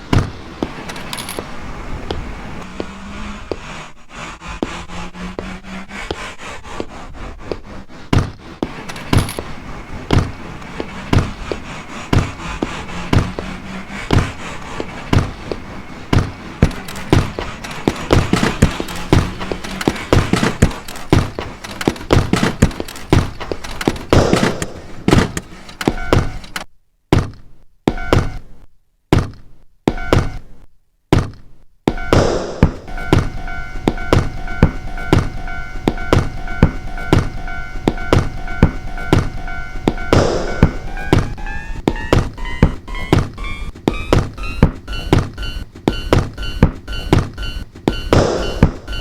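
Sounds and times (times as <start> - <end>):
sampled percussive beat: 32.1 - 49.0.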